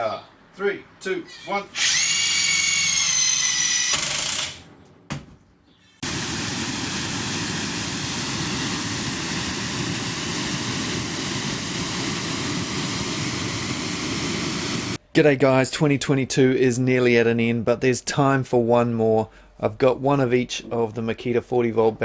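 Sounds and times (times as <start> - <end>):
impact wrench motor whine: 1.8 - 4.7, 6.0 - 15.0
steady rushing noise: 6.0 - 15.0.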